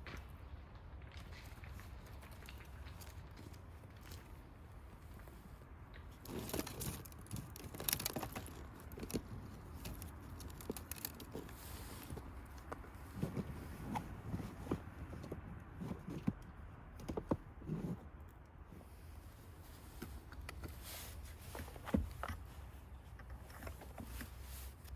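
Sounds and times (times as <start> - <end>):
rustling: 1.1 - 16.4, 17.3 - 24.9.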